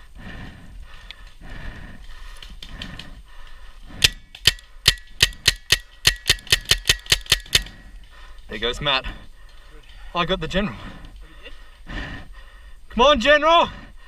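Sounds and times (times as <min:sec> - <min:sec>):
rustling of movement: 0:00.0 - 0:13.0
rapid gunshots: 0:04.0 - 0:07.7.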